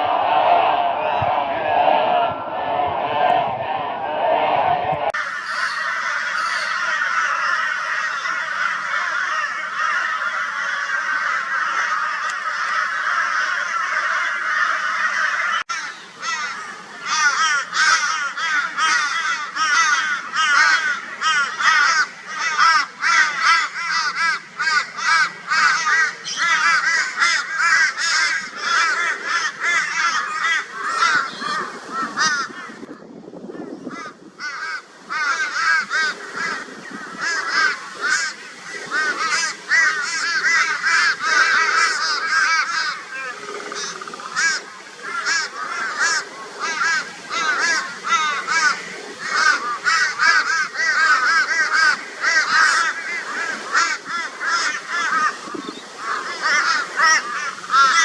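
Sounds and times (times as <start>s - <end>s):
crows cawing: 5.2s - 32.8s, 33.9s - 58.0s.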